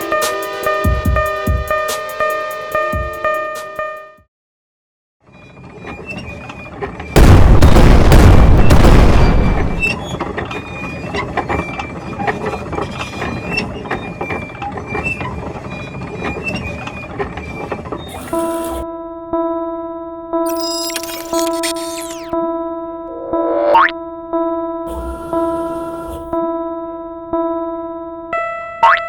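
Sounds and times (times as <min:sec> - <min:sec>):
cartoon crash: 0:07.2 - 0:10.0, 0:20.5 - 0:22.4
short high squeaks: 0:17.6 - 0:18.8, 0:20.5 - 0:22.4.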